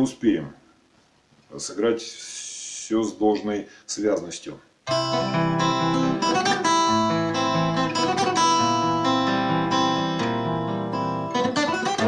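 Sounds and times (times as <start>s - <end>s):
fingerstyle acoustic guitar: 4.9s - 12.0s.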